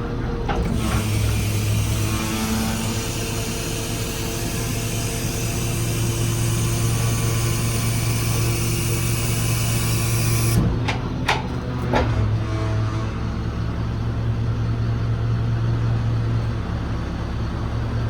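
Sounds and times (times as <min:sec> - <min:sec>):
diesel engine running: 0:00.0 - 0:18.0
hydraulic hiss: 0:00.8 - 0:10.6.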